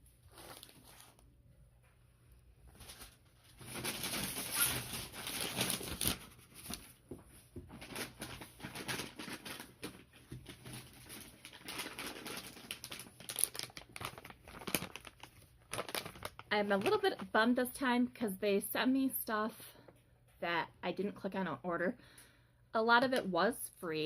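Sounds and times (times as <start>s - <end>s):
packaging rustling and crinkling: 0.2s - 1.2s, 2.7s - 17.4s.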